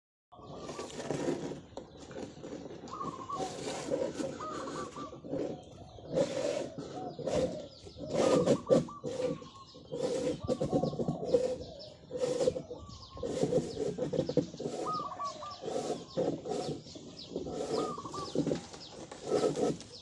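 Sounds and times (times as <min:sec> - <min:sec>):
dove cooing in trilled phrases: 0:02.9 - 0:03.6, 0:04.3 - 0:06.0, 0:06.7 - 0:09.6, 0:17.6 - 0:18.5.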